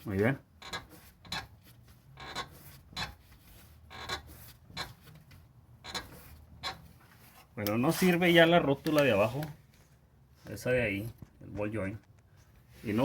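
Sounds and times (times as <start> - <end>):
suspension creaking and clicking: 0.5 - 7.2.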